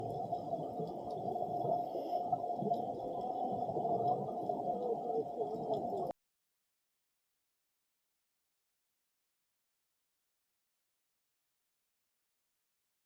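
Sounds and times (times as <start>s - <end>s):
underwater rumble: 0.0s - 6.1s.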